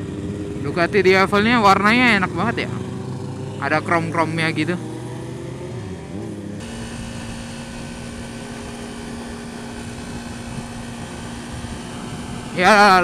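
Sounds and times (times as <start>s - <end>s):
motorcycle engine running: 0.0s - 13.0s
wind noise: 6.6s - 13.0s.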